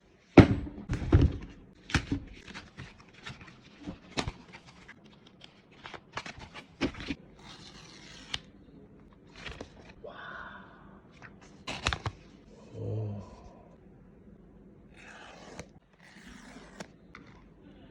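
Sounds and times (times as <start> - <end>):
paper tearing and rustling: 1.8 - 8.5, 9.3 - 10.0, 11.4 - 12.4, 15.0 - 17.5.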